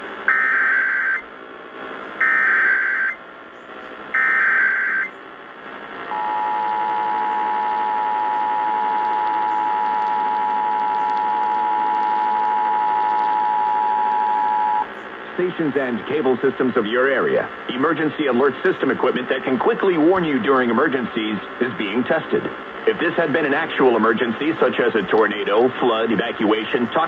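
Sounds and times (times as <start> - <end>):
screeching data header bursts: 2.2 - 3.2, 4.2 - 5.1
two-tone attention signal: 2.2 - 3.2, 4.2 - 5.1, 6.1 - 14.8.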